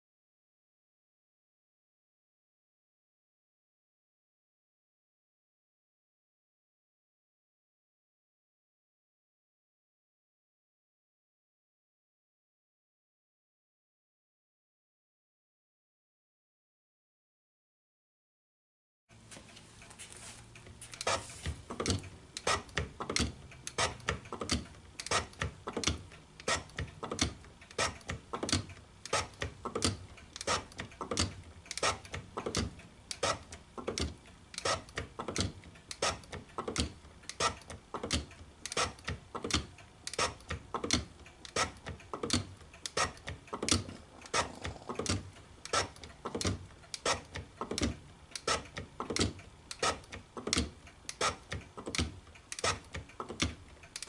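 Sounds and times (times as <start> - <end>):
metal shaper clicking and clacking: 19.4 - 54.0.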